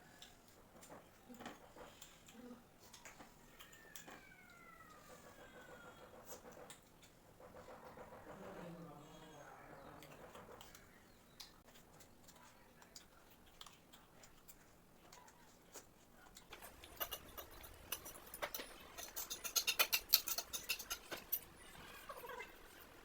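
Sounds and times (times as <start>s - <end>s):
chewing crispy food: 9.6s - 23.0s.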